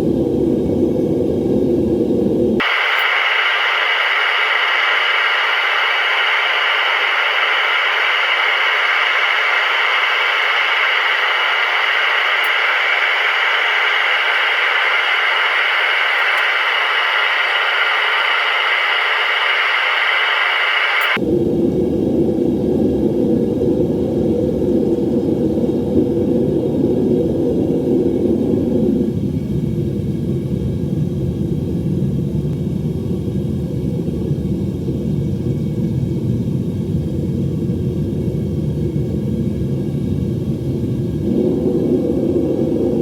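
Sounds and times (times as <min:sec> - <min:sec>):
steady hiss: 0:02.6 - 0:21.2.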